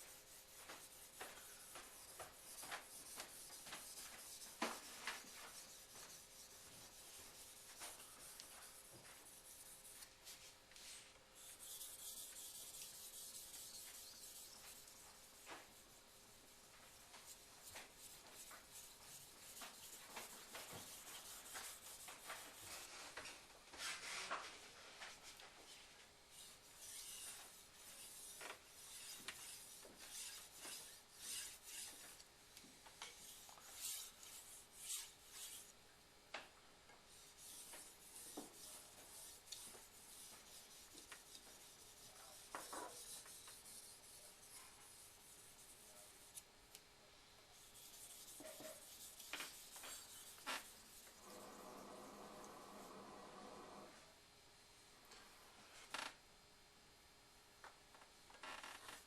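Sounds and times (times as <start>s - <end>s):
knife scraping on whetstone: 26.4s - 32.2s, 33.2s - 35.7s, 47.7s - 51.7s.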